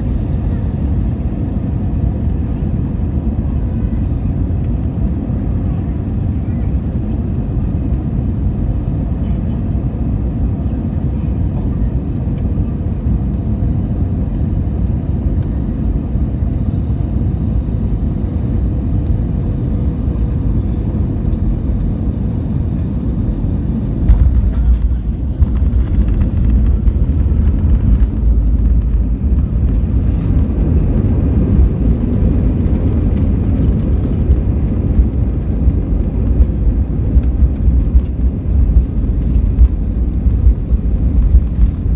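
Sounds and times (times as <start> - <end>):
aircraft cabin air and engine rush: 0.0 - 41.9
rumble of landing roll: 22.8 - 41.9.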